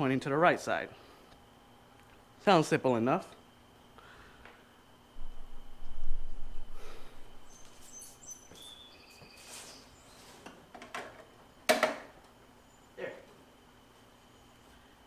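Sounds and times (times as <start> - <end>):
handling noise low rumble: 5.2 - 7.5.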